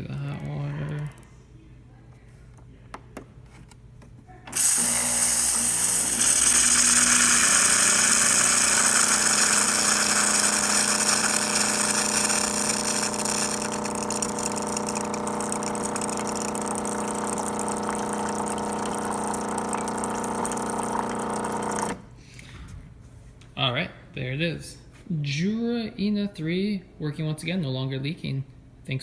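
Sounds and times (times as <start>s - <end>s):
hot water hissing from spout: 4.5s - 22.0s
water pump humming: 4.5s - 22.1s.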